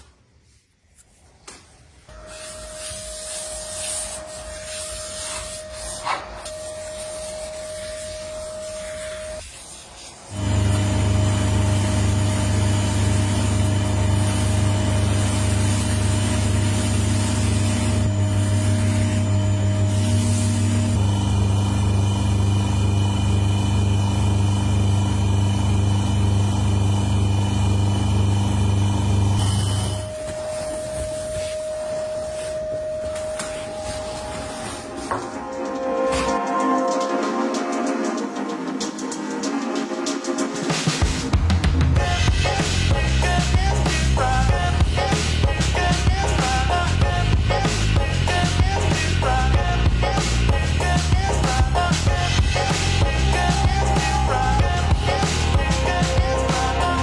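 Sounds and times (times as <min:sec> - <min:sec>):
abrasive rubbing wood: 0:02.1 - 0:10.4, 0:50.2 - 0:57.0
electric sander motor whine: 0:10.3 - 0:35.3.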